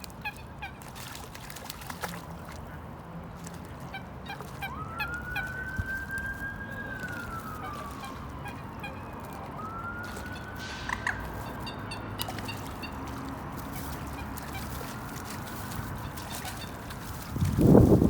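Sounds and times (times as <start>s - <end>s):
distant siren wailing: 4.6s - 13.1s
bird call: 10.2s - 13.1s.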